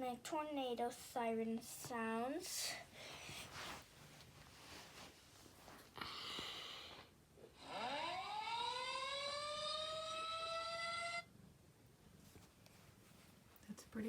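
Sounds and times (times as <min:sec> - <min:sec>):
tornado siren from tablet speaker: 0:07.6 - 0:11.3.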